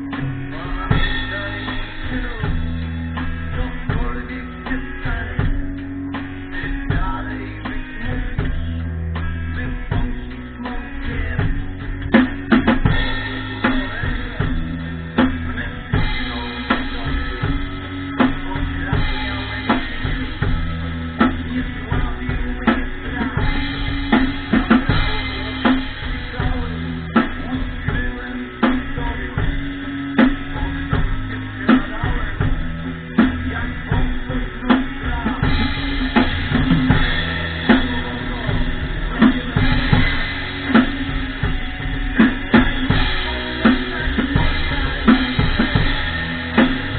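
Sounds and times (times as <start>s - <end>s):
drum kit rock beat: 0.0s - 46.9s
song with bass line: 0.0s - 46.9s.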